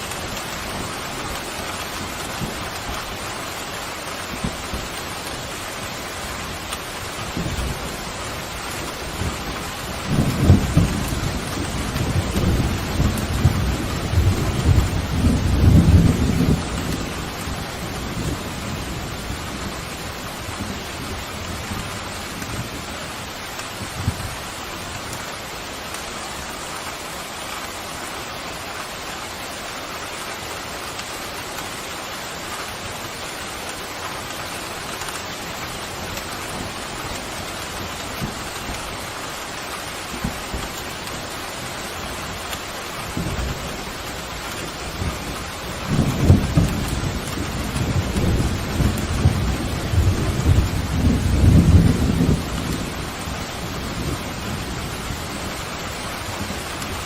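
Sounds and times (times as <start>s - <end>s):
pouring rain hissing: 0.0s - 57.0s
thunder rumbling: 6.0s - 24.5s, 42.9s - 57.0s.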